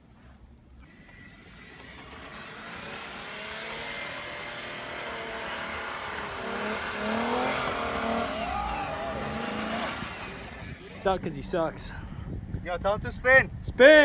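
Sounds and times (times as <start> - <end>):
car engine revving: 0.8 - 11.1
wheels spinning in snow: 0.8 - 11.1.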